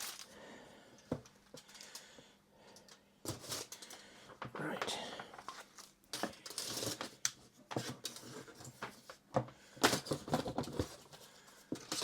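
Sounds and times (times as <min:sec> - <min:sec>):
objects rustling on a work surface: 0:05.3 - 0:09.2.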